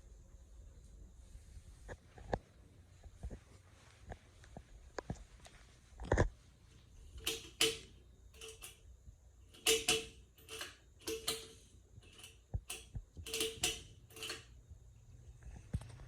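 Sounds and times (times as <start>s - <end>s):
mechanical clicks and rattles: 7.2s - 8.8s, 9.5s - 14.8s.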